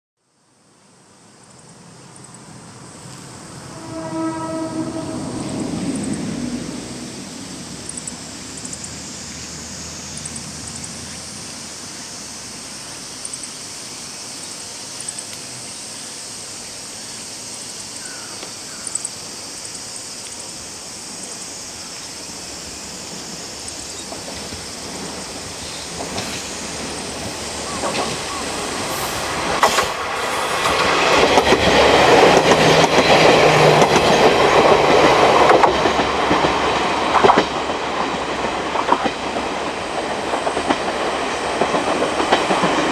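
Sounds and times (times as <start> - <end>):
diesel railcar engine: 0.7 - 42.9
wheels clattering on rails: 22.0 - 42.9.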